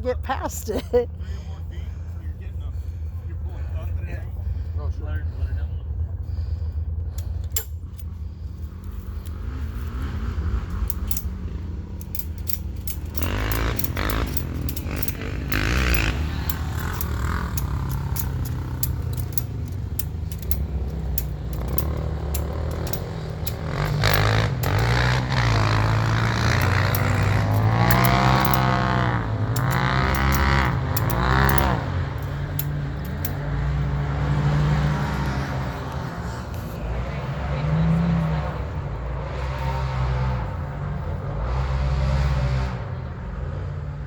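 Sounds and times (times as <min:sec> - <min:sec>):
vehicle engine revving: 0:01.7 - 0:44.0
scattered clicks: 0:07.0 - 0:37.3.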